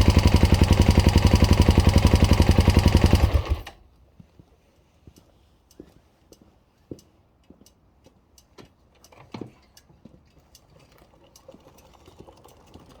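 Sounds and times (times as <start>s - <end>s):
faint irregular clicks and taps: 4.2s - 12.7s.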